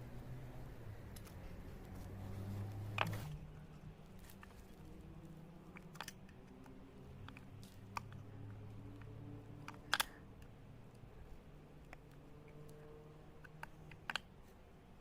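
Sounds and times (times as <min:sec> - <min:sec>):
low steady hum: 0:00.0 - 0:15.0
light clicks and taps: 0:01.1 - 0:11.1.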